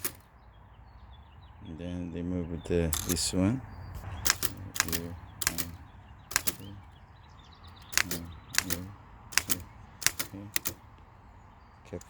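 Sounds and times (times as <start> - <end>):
typewriter key strikes: 0.0 - 0.2, 2.9 - 3.2, 4.0 - 6.8, 7.7 - 10.8.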